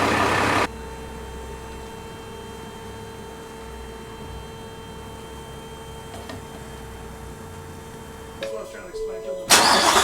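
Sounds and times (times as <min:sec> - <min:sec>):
car engine idling: 0:00.0 - 0:00.7, 0:09.5 - 0:10.0.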